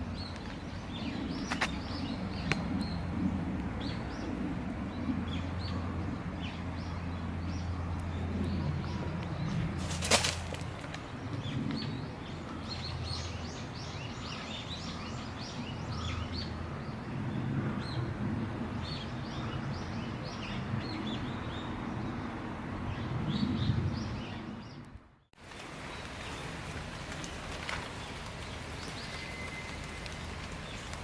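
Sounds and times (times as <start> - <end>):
small birds chirping: 23.3 - 31.0.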